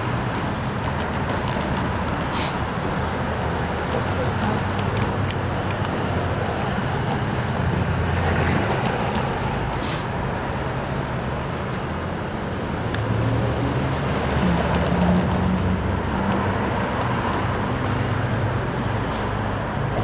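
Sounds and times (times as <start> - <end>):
low engine hum: 0.0 - 20.0
train wheels rumbling on rail: 0.0 - 20.0.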